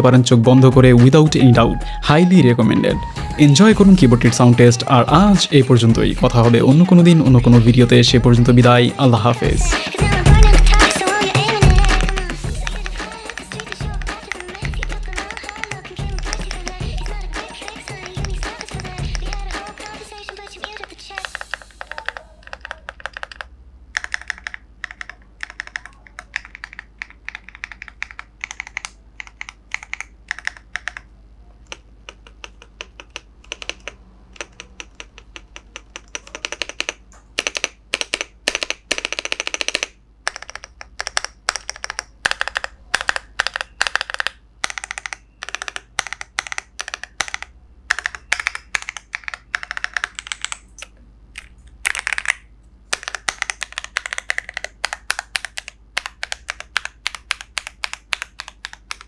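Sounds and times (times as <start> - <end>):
mechanical keyboard key clicks: 17.4 - 59.0.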